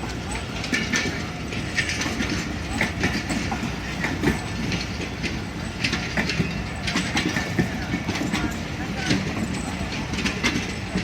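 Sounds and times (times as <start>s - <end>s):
train rumble: 0.0s - 11.0s
train wheels clattering: 0.0s - 11.0s.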